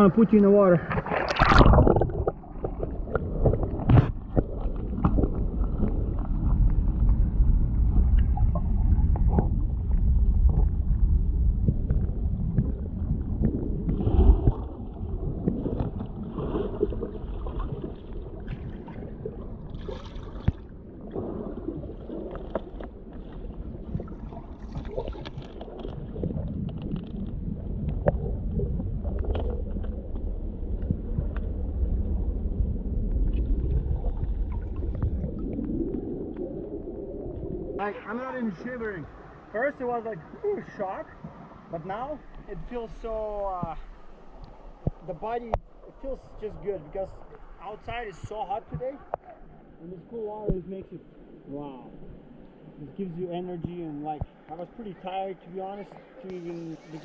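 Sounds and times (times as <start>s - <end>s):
underwater river rumble and gurgling: 0.0s - 57.0s
splash of camera entering water: 0.9s - 6.0s.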